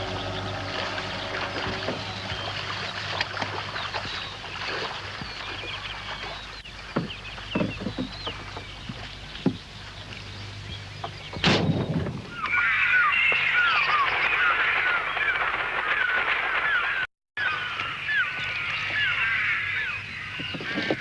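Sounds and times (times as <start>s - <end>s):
steady low hum: 0.0s - 12.5s
water noise: 0.0s - 21.0s
wooden knocks: 6.9s - 9.7s
faint bird calls: 12.2s - 21.0s.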